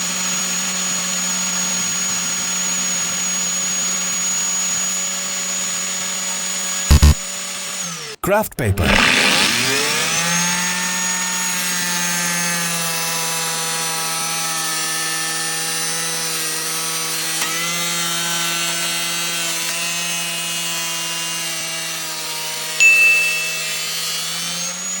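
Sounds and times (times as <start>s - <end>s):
angle grinder whining: 8.9s - 12.5s.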